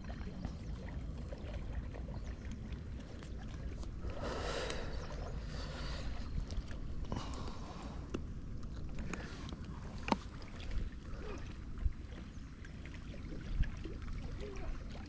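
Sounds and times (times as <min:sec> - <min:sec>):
wind and water rumble: 0:00.0 - 0:15.0.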